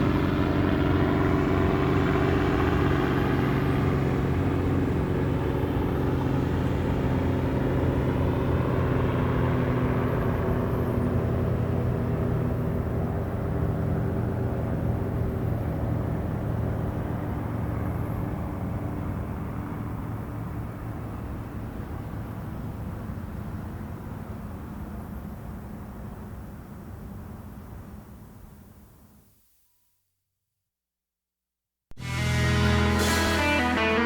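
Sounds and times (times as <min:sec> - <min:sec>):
helicopter rotor thrum: 0:00.0 - 0:21.6.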